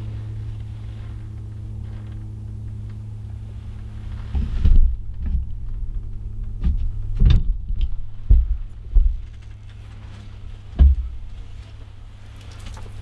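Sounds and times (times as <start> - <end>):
steady low hum: 0.0 - 13.0
dull thumps: 6.5 - 9.4, 10.6 - 11.7.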